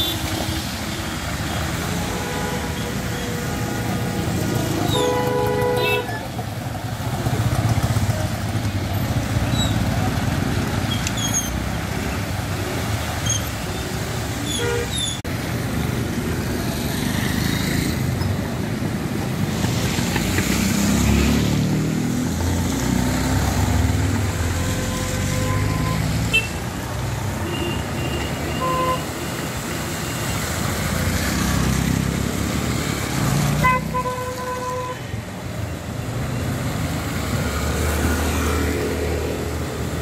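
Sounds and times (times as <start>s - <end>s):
cars and motorcycles passing: 0.0s - 40.0s
car horn toot: 33.6s - 35.0s.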